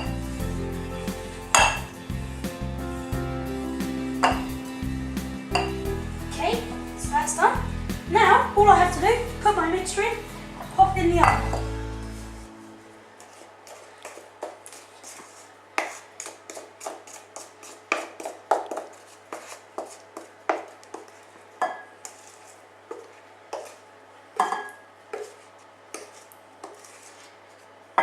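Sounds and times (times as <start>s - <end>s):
utensil scraping a mixing bowl: 13.2s - 21.3s, 22.0s - 23.8s, 25.2s - 27.8s.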